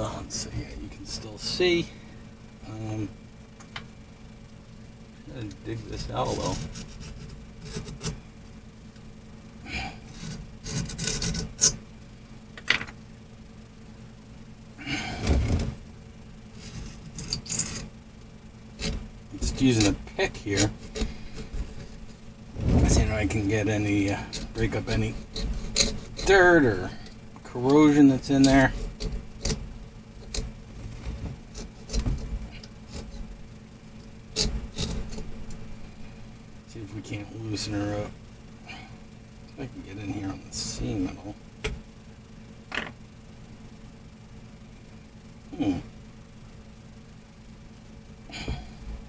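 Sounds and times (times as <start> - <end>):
metal pick scraping metal: 6.2 - 8.2, 10.0 - 11.8, 16.6 - 17.9, 18.8 - 29.6, 34.3 - 35.6.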